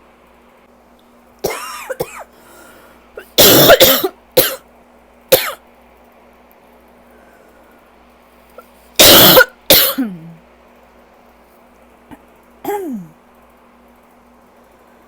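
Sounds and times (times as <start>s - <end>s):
person coughing: 1.4s - 2.3s, 3.2s - 4.6s, 5.4s - 5.6s, 9.0s - 10.4s, 12.1s - 13.2s.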